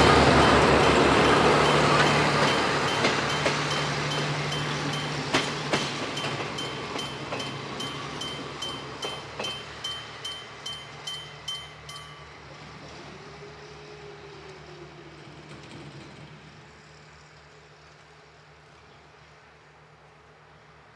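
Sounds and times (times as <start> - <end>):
level crossing bell ringing: 0.0 - 5.4, 6.2 - 12.5
train wheels clacking on rail joints: 0.0 - 12.3
diesel locomotive engine hum: 0.0 - 20.9.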